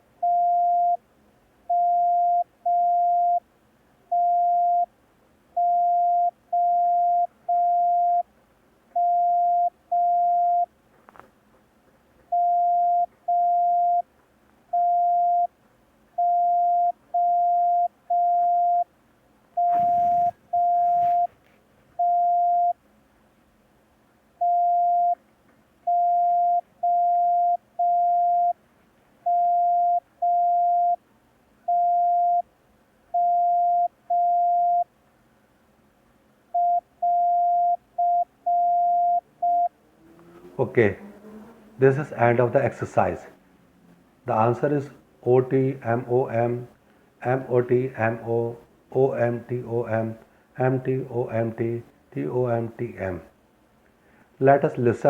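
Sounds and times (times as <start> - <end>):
morse code beeps: 0.2 - 1.0, 1.7 - 3.4, 4.1 - 4.9, 5.6 - 8.2, 9.0 - 10.7, 12.3 - 14.0, 14.8 - 15.5, 16.2 - 18.9, 19.6 - 21.3, 22.0 - 22.8, 24.4 - 25.2, 25.9 - 28.6, 29.3 - 31.0, 31.7 - 32.4, 33.2 - 34.9, 36.6 - 39.7.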